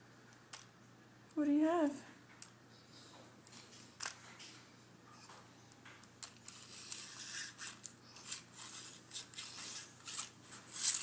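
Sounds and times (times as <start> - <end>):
tape measure scraping: 6.4 - 11.0.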